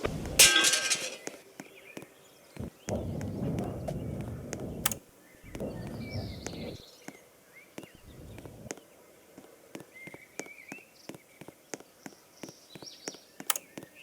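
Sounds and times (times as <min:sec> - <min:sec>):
low rumbling noise: 0:02.6 - 0:06.8, 0:08.0 - 0:08.7.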